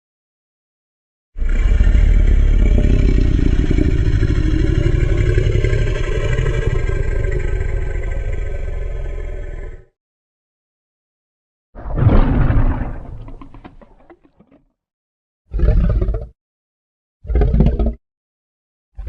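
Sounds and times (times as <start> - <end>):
deep monster growl: 1.4 - 10.0, 11.8 - 14.2.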